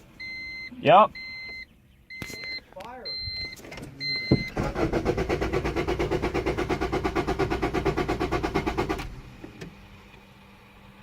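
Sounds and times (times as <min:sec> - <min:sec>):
car engine cranking on starter: 0:03.7 - 0:10.3.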